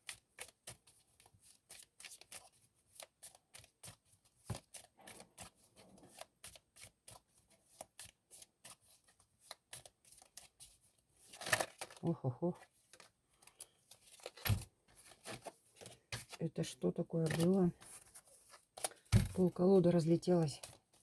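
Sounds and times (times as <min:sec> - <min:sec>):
cards being shuffled: 0:11.3 - 0:12.0, 0:12.8 - 0:16.5, 0:17.1 - 0:21.0.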